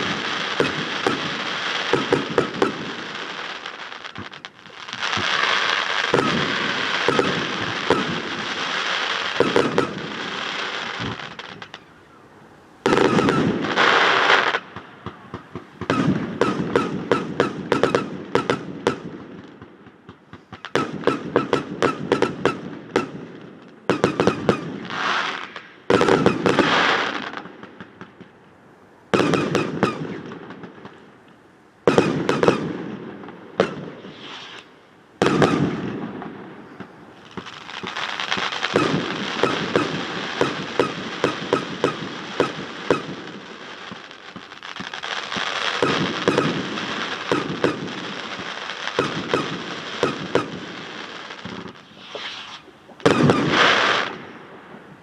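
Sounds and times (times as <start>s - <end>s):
fireworks crackling and popping: 0.0s - 28.4s, 29.1s - 55.0s
hissing sprays of sparks: 51.7s - 54.1s.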